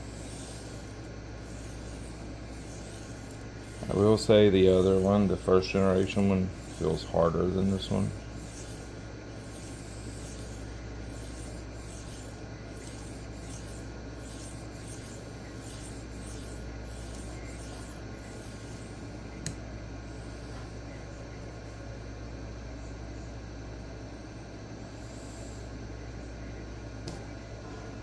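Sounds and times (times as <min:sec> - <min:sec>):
knife scraping on sharpening stone: 0:00.0 - 0:18.8.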